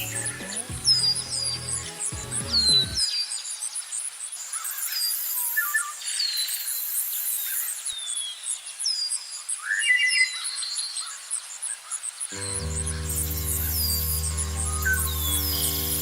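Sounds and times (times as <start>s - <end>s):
music: 0.0s - 3.0s, 12.4s - 16.0s
birds whistling and chirping: 0.0s - 3.2s, 12.4s - 16.0s
pulsing insect chirp: 11.3s - 16.0s.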